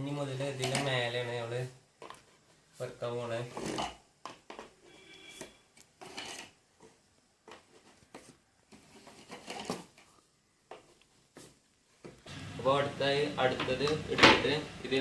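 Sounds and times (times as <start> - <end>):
plastic parts knocking and clicking: 3.6 - 4.8, 13.5 - 14.5.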